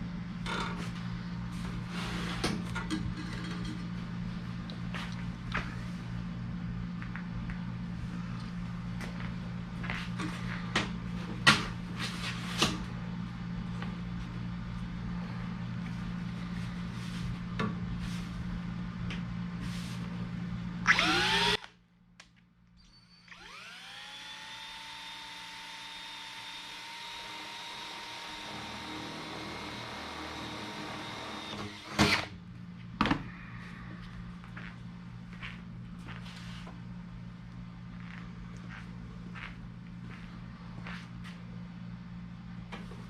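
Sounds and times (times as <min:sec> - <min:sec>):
small electric motor humming: 0:20.8 - 0:21.6, 0:23.2 - 0:32.0.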